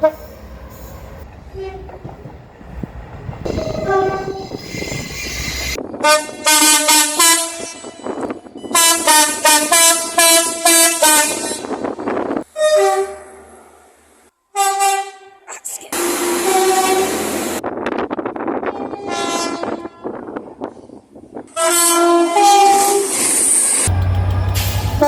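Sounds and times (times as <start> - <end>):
train horn toots and blasts: 0.0 - 0.3, 1.5 - 2.0, 3.5 - 4.6, 6.0 - 11.9, 12.6 - 13.4, 14.5 - 15.4, 16.0 - 17.6, 18.6 - 20.2, 21.5 - 23.2.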